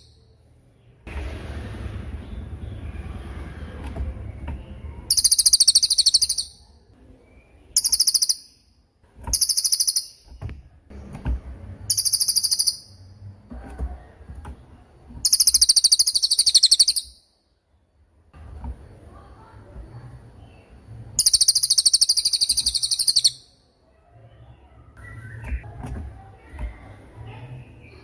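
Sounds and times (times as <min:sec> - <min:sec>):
songbird trilled chirps: 0:04.2 - 0:10.5, 0:11.9 - 0:13.2, 0:15.2 - 0:17.4, 0:20.4 - 0:23.6.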